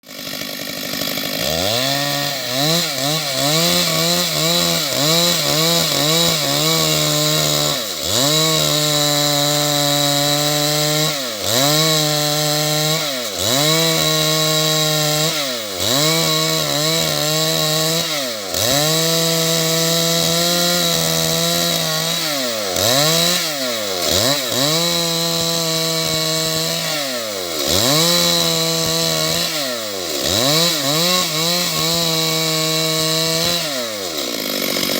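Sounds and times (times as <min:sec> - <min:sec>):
chainsaw cutting wood: 0:00.0 - 0:34.9.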